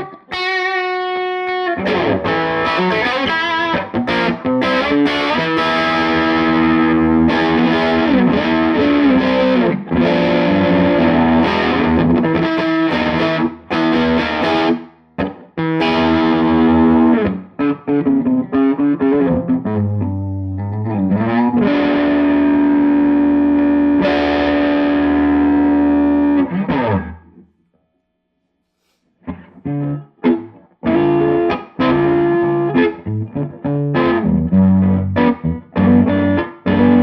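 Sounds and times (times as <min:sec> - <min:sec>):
distorted electric guitar: 0:00.0 - 0:27.5, 0:28.8 - 0:37.0.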